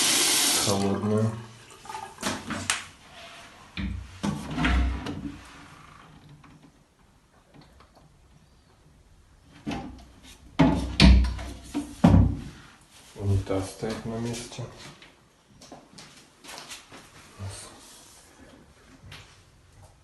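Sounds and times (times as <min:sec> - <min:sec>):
knocks and thumps: 0:10.6 - 0:12.4.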